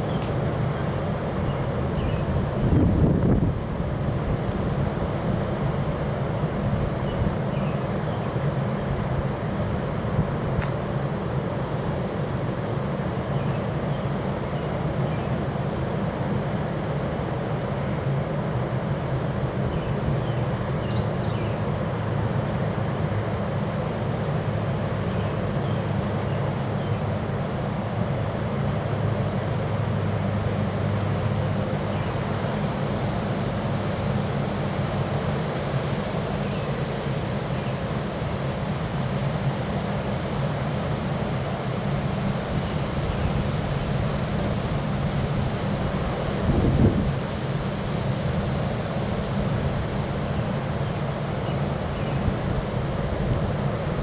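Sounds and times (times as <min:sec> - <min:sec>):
strong wind buffeting microphone: 0:00.0 - 0:07.5, 0:41.9 - 0:54.0.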